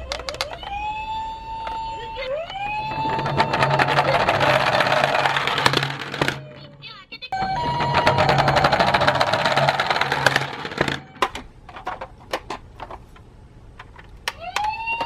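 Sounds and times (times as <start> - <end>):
toy car motor whirring: 0.0 - 6.7, 7.4 - 11.2
rising tone: 0.9 - 6.5, 7.4 - 11.0.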